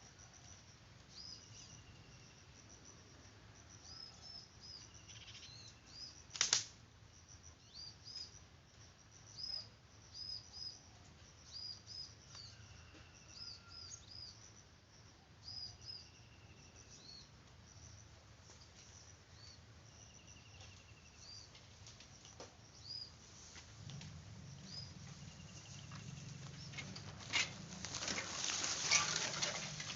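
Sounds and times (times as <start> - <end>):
small birds chirping: 3.8 - 6.2, 7.6 - 8.5, 9.2 - 12.7, 15.4 - 29.9
sharp click: 6.3 - 6.7.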